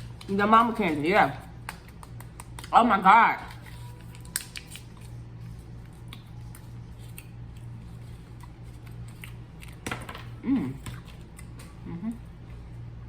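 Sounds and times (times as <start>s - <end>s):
steady low hum: 0.0s - 13.0s
person chewing candy: 3.5s - 9.8s.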